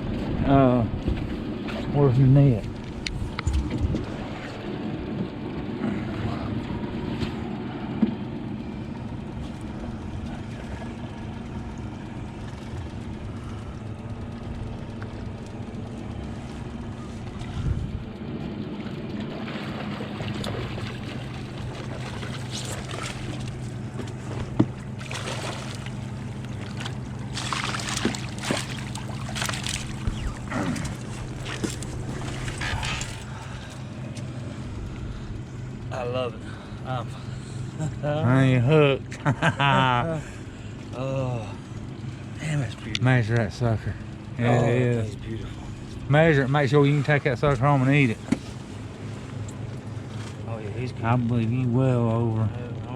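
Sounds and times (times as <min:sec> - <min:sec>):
boat motor running: 0:00.0 - 0:52.9
wind on microphone: 0:02.7 - 0:04.6, 0:17.3 - 0:18.2, 0:29.8 - 0:33.2.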